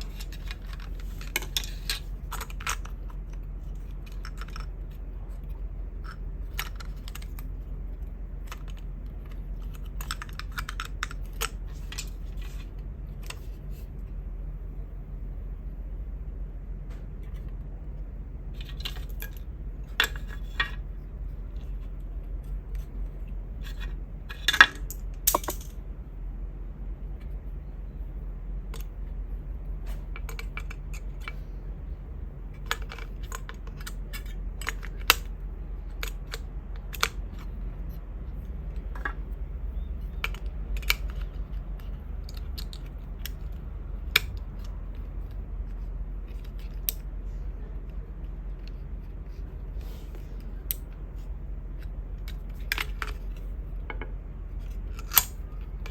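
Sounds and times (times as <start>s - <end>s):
plastic and metal parts clicking: 0.0s - 7.6s, 8.4s - 13.5s, 35.9s - 37.6s, 51.8s - 55.9s
steady low hum: 0.0s - 55.9s.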